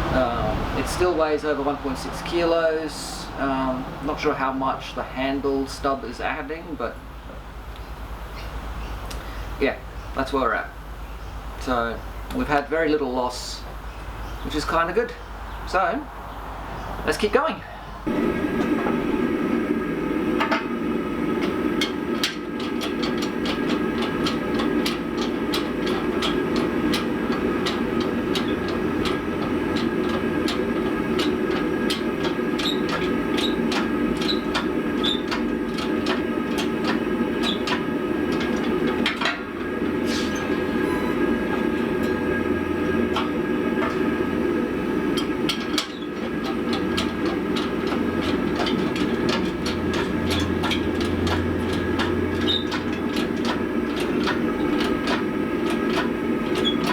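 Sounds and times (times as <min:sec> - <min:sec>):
press machine drone: 0:17.6 - 0:56.9
sharp clicks and knocks: 0:18.0 - 0:56.9.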